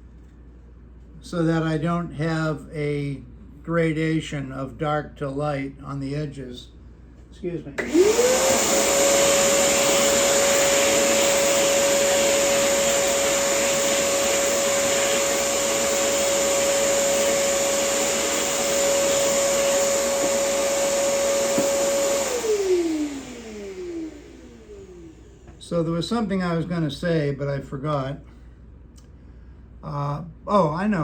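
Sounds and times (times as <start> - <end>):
vacuum cleaner running: 7.8 - 25.9.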